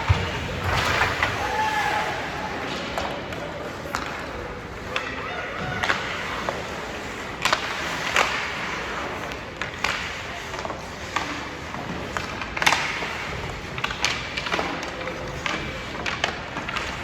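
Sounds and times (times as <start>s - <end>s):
steady scraping hiss: 6.0s - 17.0s.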